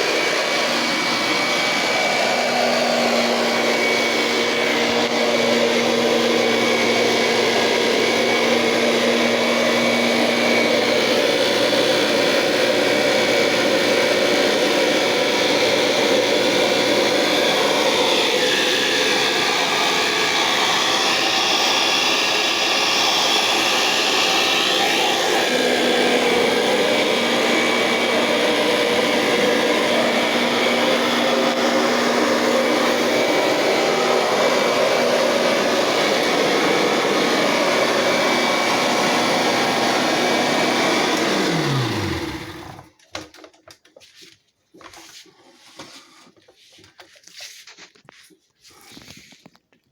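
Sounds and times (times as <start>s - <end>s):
vacuum cleaner running: 0.0s - 43.0s
motor winding down: 17.0s - 42.9s.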